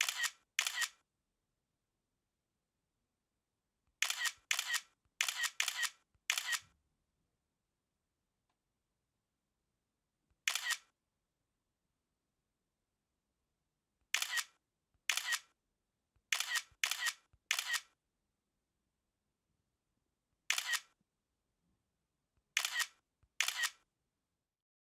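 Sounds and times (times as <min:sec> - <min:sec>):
camera shutter click: 0:00.0 - 0:01.0, 0:04.0 - 0:06.6, 0:10.5 - 0:10.9, 0:14.2 - 0:14.5, 0:15.1 - 0:15.5, 0:16.3 - 0:17.9, 0:20.5 - 0:20.9, 0:22.6 - 0:23.8.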